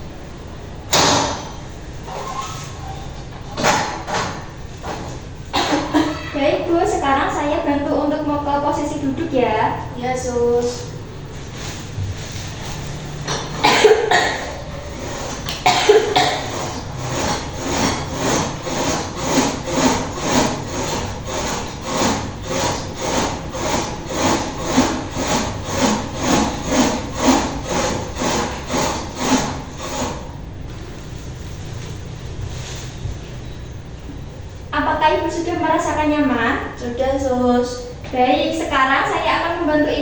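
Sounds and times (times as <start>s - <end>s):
loud knocks: 0.9s - 1.6s, 3.6s - 5.1s.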